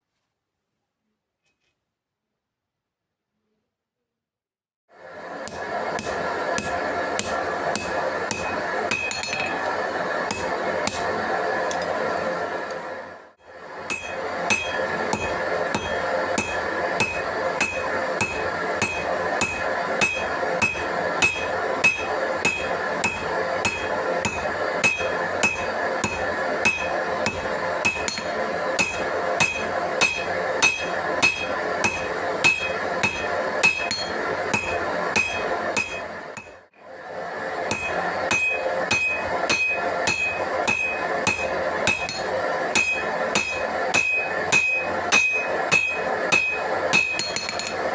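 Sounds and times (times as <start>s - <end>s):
hammer striking steel on anvil: 5.4s - 12.0s, 13.8s - 36.7s, 37.6s - 47.9s.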